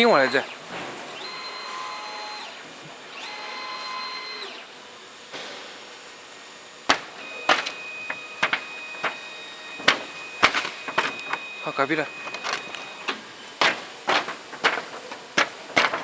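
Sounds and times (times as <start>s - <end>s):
machine motors whining: 0.0s - 16.0s
steady high tone: 7.2s - 13.1s.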